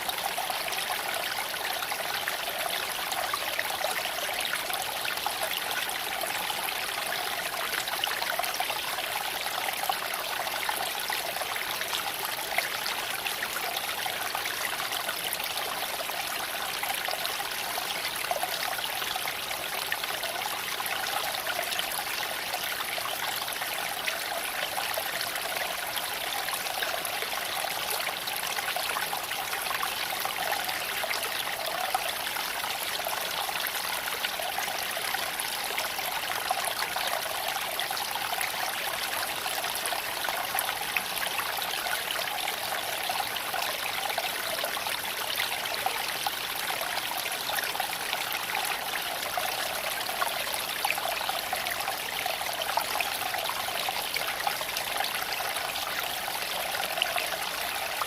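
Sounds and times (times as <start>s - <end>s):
creek water flowing over stones: 0.0s - 58.0s.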